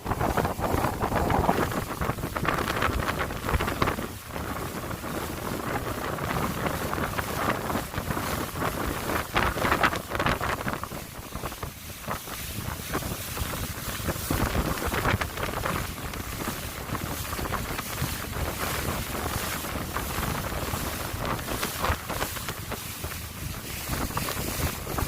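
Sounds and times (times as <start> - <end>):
water rushing past boat: 0.0 - 25.0
wind buffeting microphone: 0.0 - 25.0.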